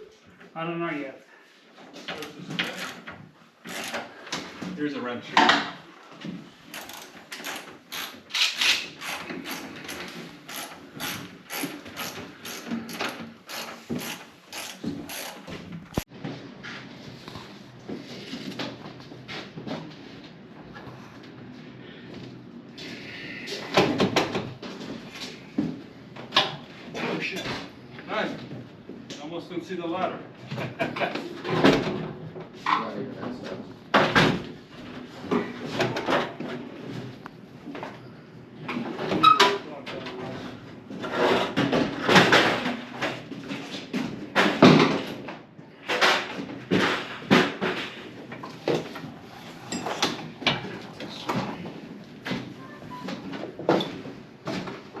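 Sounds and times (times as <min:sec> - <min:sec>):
ratchet wrench clicking: 0:06.7 - 0:09.6, 0:10.5 - 0:12.7, 0:13.5 - 0:15.4.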